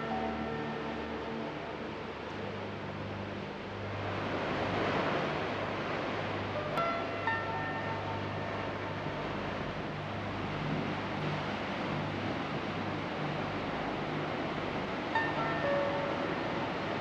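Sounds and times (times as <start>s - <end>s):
low music drone: 0.0s - 17.0s.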